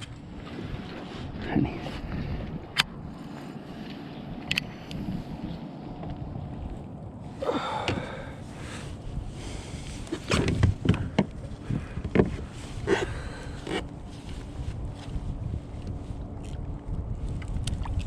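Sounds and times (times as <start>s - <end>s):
wind rumble on microphone: 0.0s - 18.0s.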